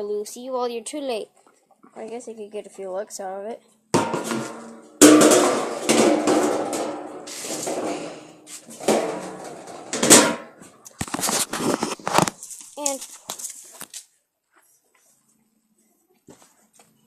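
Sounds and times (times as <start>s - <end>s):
dishes clattering: 4.0s - 10.6s.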